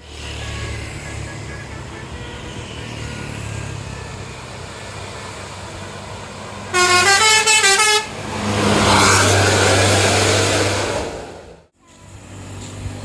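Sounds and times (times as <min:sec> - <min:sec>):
musical bus horn tune: 0:00.0 - 0:05.2, 0:06.7 - 0:09.7
bus engine rumble: 0:00.0 - 0:13.0.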